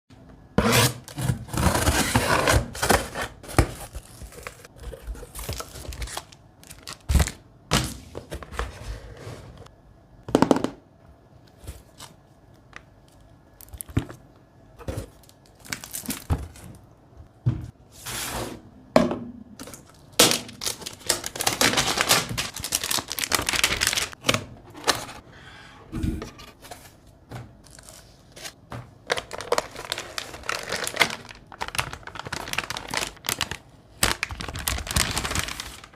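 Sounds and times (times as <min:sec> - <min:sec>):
box sliding and scraping: 0:17.9 - 0:18.7
cardboard and plastic tearing: 0:19.8 - 0:25.1, 0:27.7 - 0:35.9.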